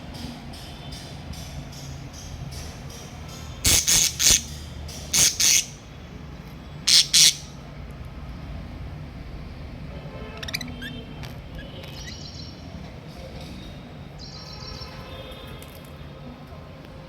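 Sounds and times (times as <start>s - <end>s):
parrots screeching: 3.6s - 5.8s, 6.9s - 7.6s, 10.4s - 11.0s.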